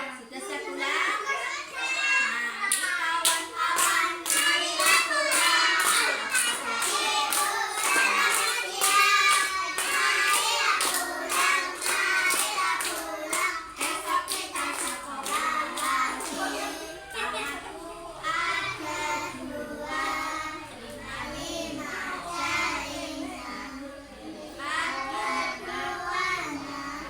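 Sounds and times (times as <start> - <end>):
children singing in unison: 0.8 - 27.0
children clapping in time: 2.7 - 17.0.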